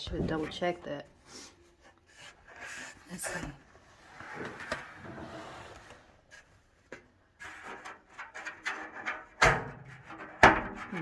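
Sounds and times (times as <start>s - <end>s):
dryer drum rubbing and scraping: 2.1s - 6.5s.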